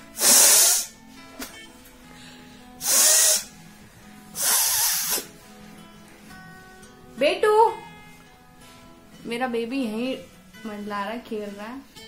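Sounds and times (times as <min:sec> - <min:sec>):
woman blowing her nose: 0:00.0 - 0:01.0, 0:02.8 - 0:03.6, 0:04.3 - 0:05.4
faint background music: 0:00.0 - 0:12.0.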